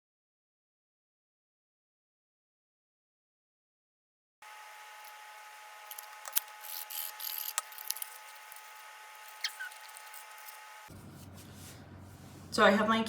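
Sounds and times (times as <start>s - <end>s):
faint steady hum: 4.4s - 13.0s
paper folding and creasing: 5.0s - 11.0s.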